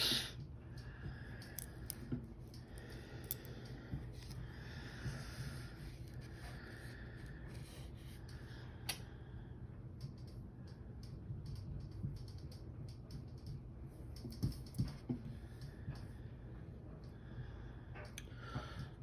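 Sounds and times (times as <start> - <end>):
low steady hum: 0.0 - 19.0.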